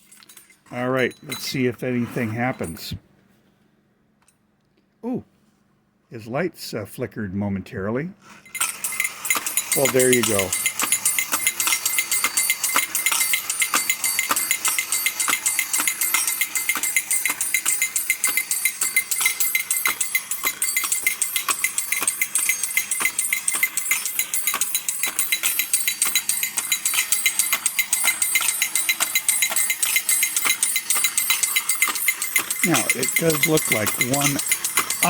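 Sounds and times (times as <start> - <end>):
toy cymbal clinking: 8.4 - 35.0
toy drumsticks beating tin drum: 8.6 - 35.0.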